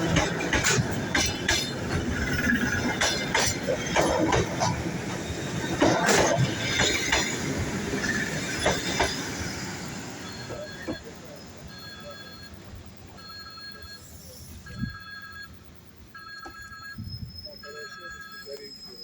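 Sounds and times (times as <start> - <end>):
wheels clanking over rail joints: 0.0 - 11.1
wheel squeals: 0.0 - 12.4
train rolling slowly: 0.0 - 19.0.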